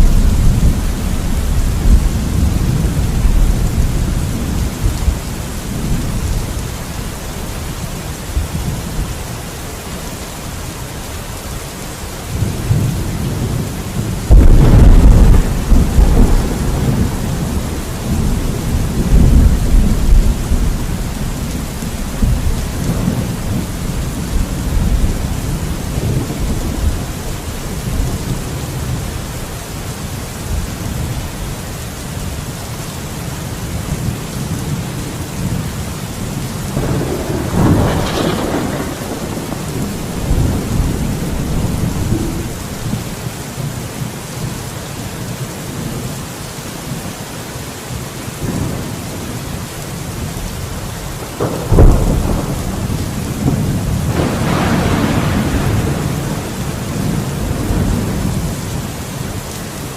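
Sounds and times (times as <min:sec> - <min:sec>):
rolling thunder rumble: 0:00.0 - 0:06.9, 0:12.3 - 0:29.5, 0:33.8 - 0:43.3, 0:48.4 - 0:59.5
steady rain: 0:00.0 - 0:59.9
sharp thunder crack: 0:12.7 - 0:20.7, 0:36.8 - 0:43.0, 0:51.4 - 0:58.1.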